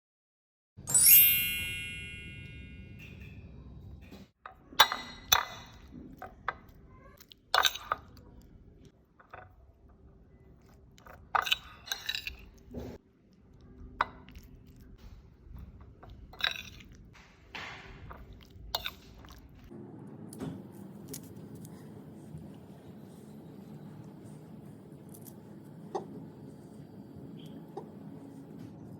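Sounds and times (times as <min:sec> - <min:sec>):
bright metallic ring: 0:00.9 - 0:03.4
kitchen utensils clinking: 0:00.9 - 0:06.0, 0:11.1 - 0:13.0.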